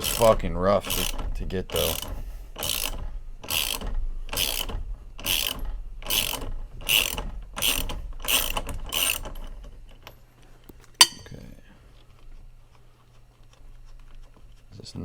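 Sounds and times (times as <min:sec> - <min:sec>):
ratchet wrench clicking: 0:00.0 - 0:00.3, 0:01.8 - 0:03.8, 0:04.4 - 0:09.2.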